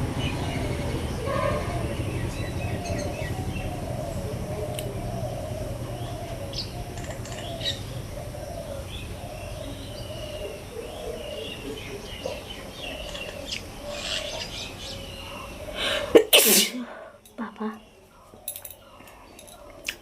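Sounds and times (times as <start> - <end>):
birds chirping: 0.0 - 20.0
low cooing: 2.7 - 16.2.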